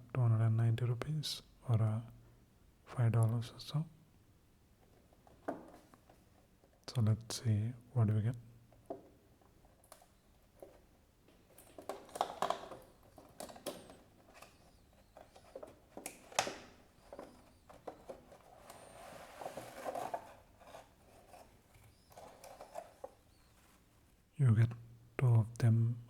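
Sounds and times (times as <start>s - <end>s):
packaging rustling and crinkling: 9.6s - 24.0s.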